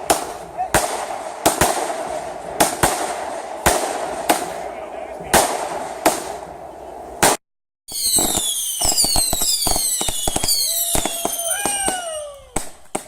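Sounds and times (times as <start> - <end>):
fireworks bangs and pops: 0.0 - 13.0
fireworks crackling: 0.0 - 13.0
whistling fireworks screaming: 7.3 - 13.0.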